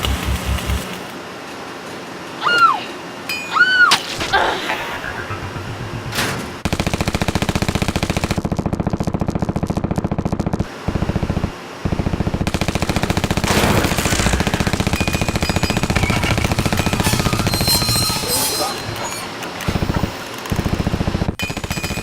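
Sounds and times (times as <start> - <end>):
rapid automatic gunfire: 5.5 - 18.0, 19.7 - 22.0.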